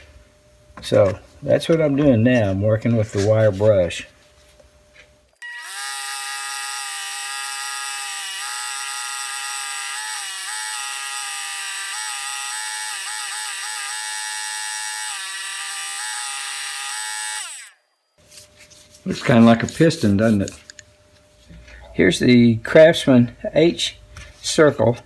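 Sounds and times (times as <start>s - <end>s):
wire wheel brush whining: 5.3s - 20.8s.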